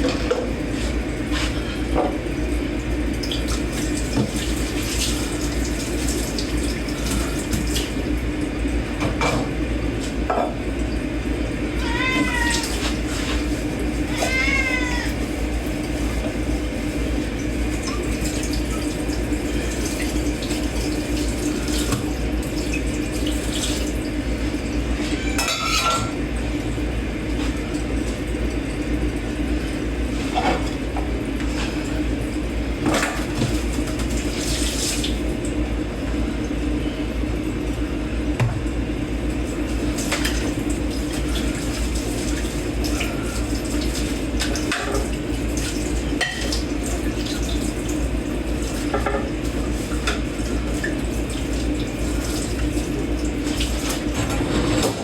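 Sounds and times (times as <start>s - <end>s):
tap water running into sink: 0.0s - 11.1s, 11.8s - 35.6s, 38.3s - 55.0s
dishes and cutlery clinking: 25.3s - 26.2s.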